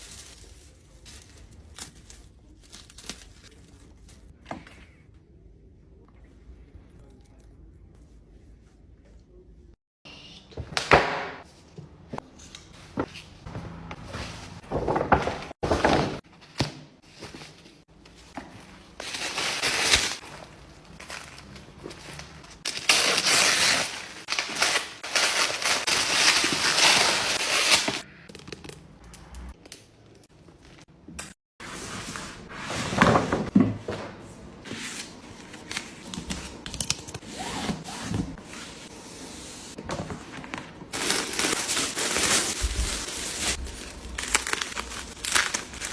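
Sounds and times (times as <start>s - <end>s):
paper and cardboard rustling: 11.5s - 28.0s, 37.9s - 45.9s.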